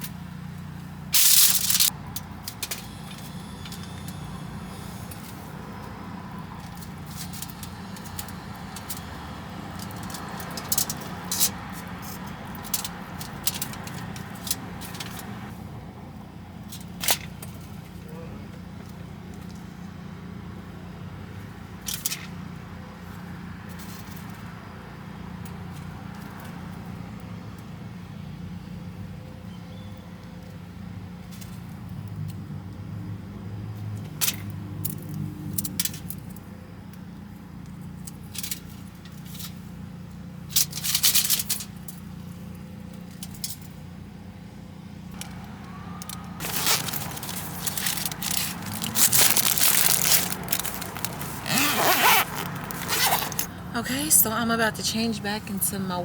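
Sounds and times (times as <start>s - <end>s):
items clicking and rattling: 46.1s - 53.5s.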